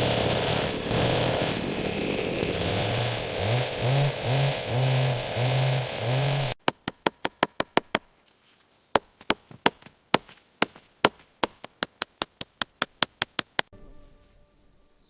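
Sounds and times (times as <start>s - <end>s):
hand tool striking wood: 2.5s - 8.1s, 8.9s - 13.7s.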